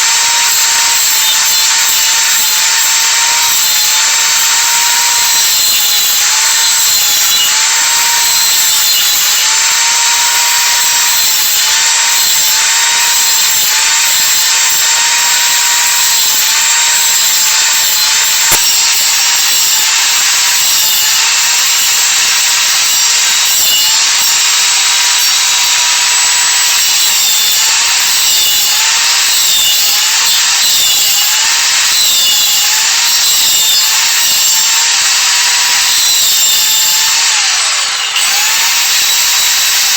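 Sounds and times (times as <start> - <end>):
lathe motor whine: 0.0 - 39.9
wood cutting hiss: 0.0 - 39.9
sharp click: 18.5 - 18.8.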